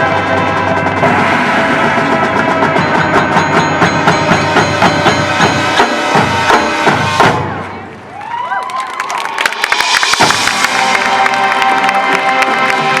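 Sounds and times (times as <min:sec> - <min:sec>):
marching band music: 0:00.0 - 0:08.2, 0:09.4 - 0:13.0
percussion beat: 0:00.4 - 0:07.7, 0:09.2 - 0:13.0.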